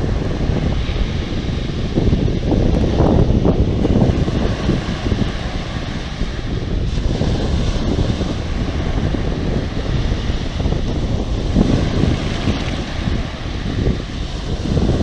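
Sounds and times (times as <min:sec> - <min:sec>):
sea waves: 0:00.0 - 0:15.0
wind buffeting microphone: 0:00.0 - 0:15.0.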